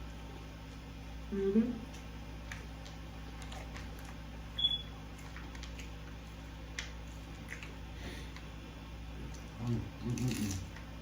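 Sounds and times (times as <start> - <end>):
eating sounds: 9.2 - 11.0.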